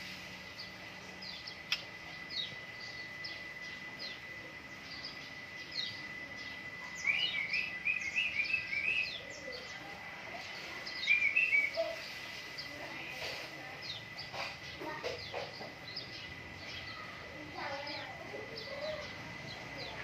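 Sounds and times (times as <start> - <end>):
thin steady high tone: 0.0 - 20.0
bird singing high chirps: 0.5 - 20.0
sharp click: 1.7 - 1.9.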